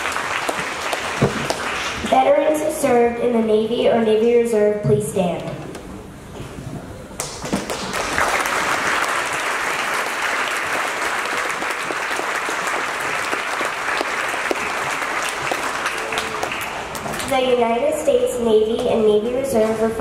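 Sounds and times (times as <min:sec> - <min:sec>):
audience applauding: 0:00.0 - 0:02.1, 0:07.2 - 0:17.4.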